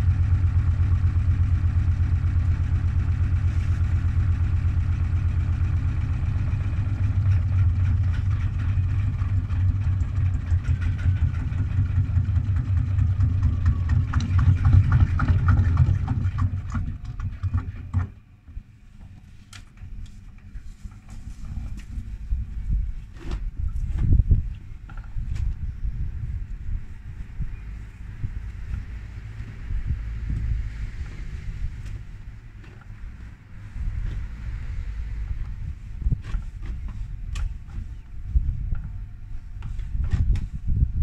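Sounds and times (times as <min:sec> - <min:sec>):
washing machine drum rumbling: 0:04.0 - 0:18.2
rattling and knocking: 0:06.5 - 0:18.2.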